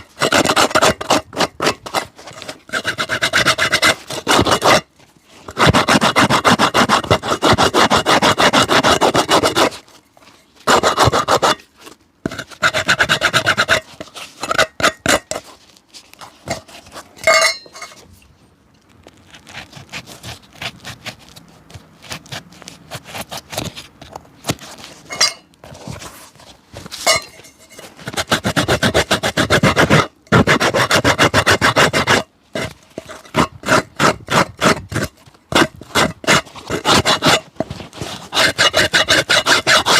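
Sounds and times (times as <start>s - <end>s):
rubbing strokes on a shoe: 0.0s - 17.2s, 19.2s - 25.2s, 25.8s - 39.9s
scratches and taps: 18.8s - 39.9s.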